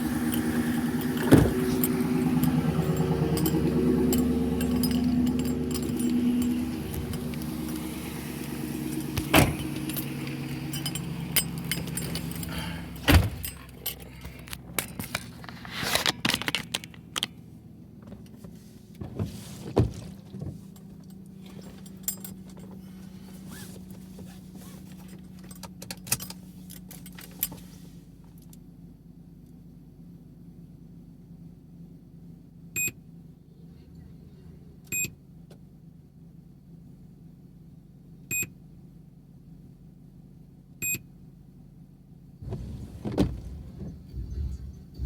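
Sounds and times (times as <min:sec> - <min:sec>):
pickup truck engine running: 0:00.0 - 0:18.3, 0:42.4 - 0:45.0
keys jangling: 0:00.2 - 0:07.9, 0:08.8 - 0:15.2, 0:20.7 - 0:22.9
small items rattling and clicking: 0:14.3 - 0:17.3.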